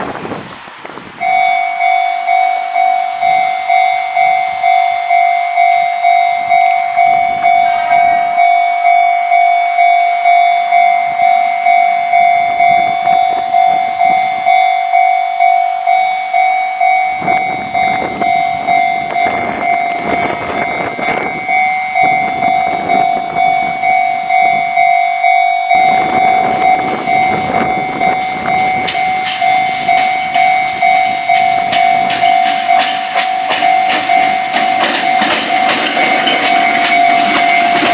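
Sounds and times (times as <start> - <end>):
train rumbling over crossing: 0.0 - 37.9
level-crossing alarm bell ringing: 0.7 - 37.9.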